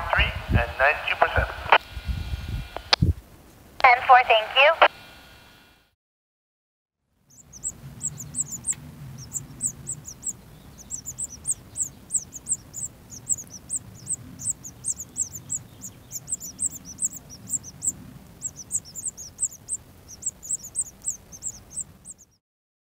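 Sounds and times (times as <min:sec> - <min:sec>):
small birds chirping: 0:07.2 - 0:22.4
faint low hum: 0:07.3 - 0:22.4.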